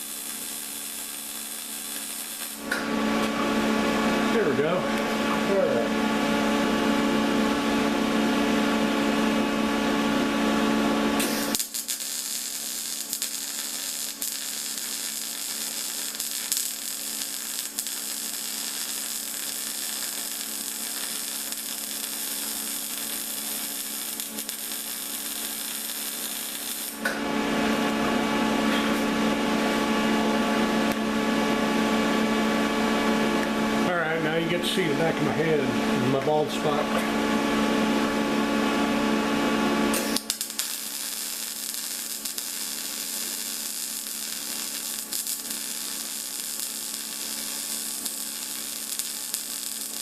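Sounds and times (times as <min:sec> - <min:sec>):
welding arc crackling: 0:00.0 - 0:07.9, 0:09.2 - 0:28.1, 0:39.7 - 0:50.0
electrical hum: 0:00.0 - 0:50.0.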